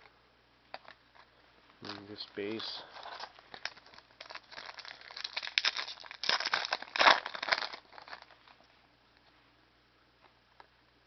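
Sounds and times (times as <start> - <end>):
card pack wrapper crinkling: 1.8 - 8.6.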